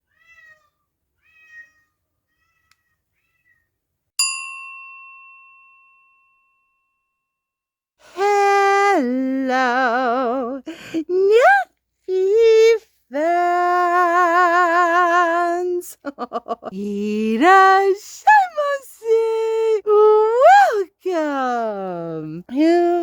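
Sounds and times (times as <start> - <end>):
faint cat meows: 0.0 - 3.7
bell chime ringing: 4.2 - 7.3
person singing with vibrato: 8.0 - 23.0.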